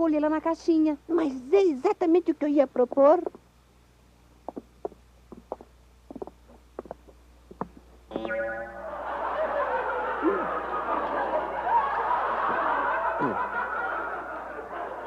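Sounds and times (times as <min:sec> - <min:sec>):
high voices giggling and chattering: 0:08.7 - 0:15.0.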